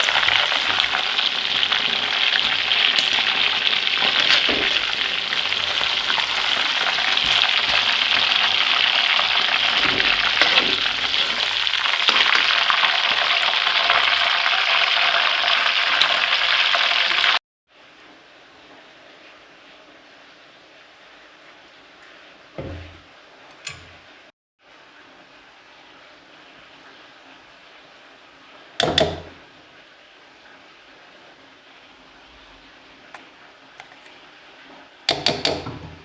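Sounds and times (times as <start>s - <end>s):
chicken sizzling in hot oil: 0.0s - 17.4s.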